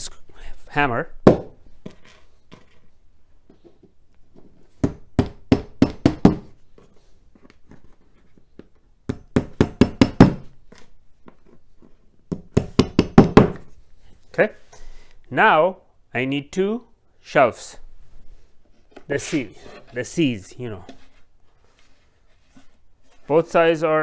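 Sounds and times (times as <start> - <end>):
hammer tapping wooden dowels: 4.8 - 6.6, 9.1 - 10.5, 12.3 - 13.7.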